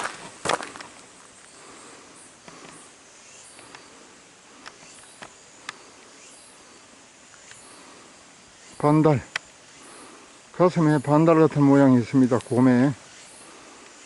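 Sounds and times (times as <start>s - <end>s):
footstep on a trail: 0.0s - 2.9s
steady soft hiss: 0.0s - 14.0s
faint sharp ticks: 3.5s - 3.9s, 4.6s - 5.8s, 7.3s - 7.7s, 12.2s - 12.6s.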